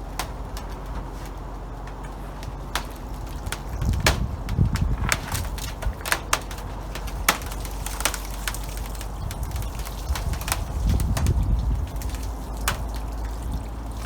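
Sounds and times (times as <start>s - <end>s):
ice cracking and crunching: 0.0s - 14.0s.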